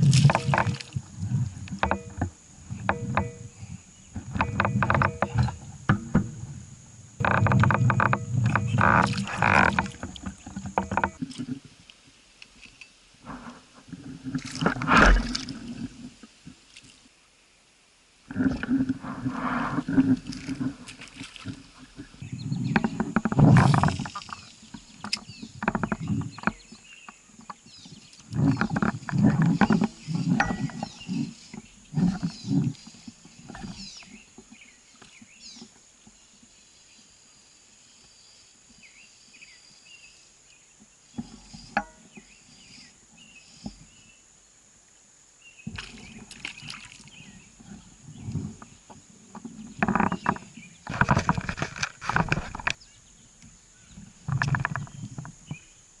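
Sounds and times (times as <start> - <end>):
low rough pulsing animal calls: 0.0 - 11.6, 28.3 - 34.7
water sloshing against boat: 0.0 - 11.9, 12.5 - 17.1, 18.3 - 36.2, 45.7 - 55.8
high insect drone: 0.0 - 17.0, 18.2 - 56.0
bird chirps: 29.6 - 33.0.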